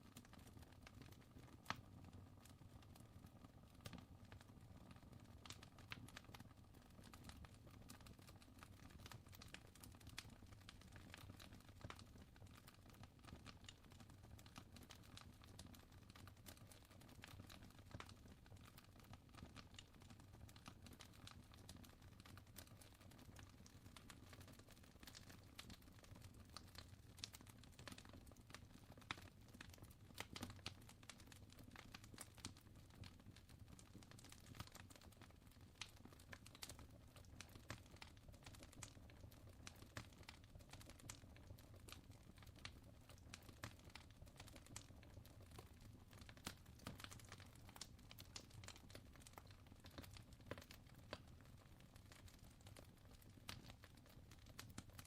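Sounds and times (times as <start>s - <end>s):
fire crackling: 26.5s - 51.3s.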